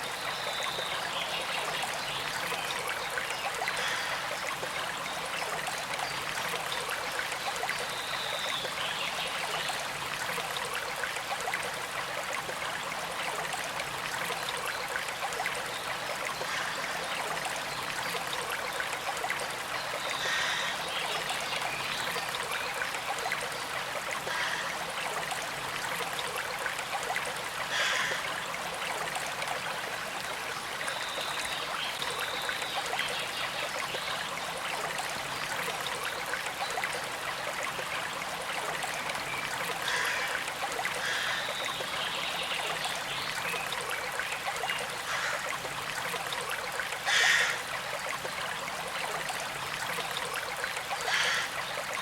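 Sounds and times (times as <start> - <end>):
creek flowing and trickling: 0.0 - 52.0.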